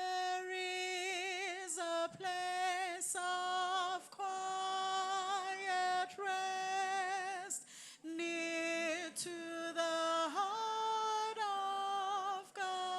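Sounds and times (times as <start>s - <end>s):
woman singing a hymn: 0.0s - 12.9s.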